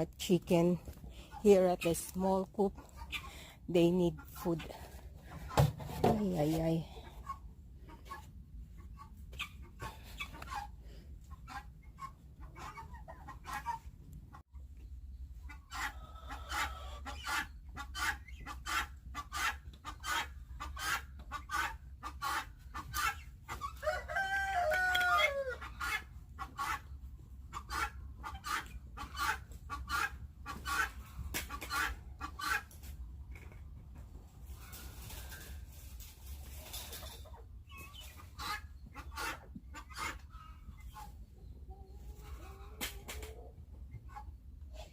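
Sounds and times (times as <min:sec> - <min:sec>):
chickens clucking: 0:00.5 - 0:44.9
rooster crowing: 0:23.8 - 0:25.6.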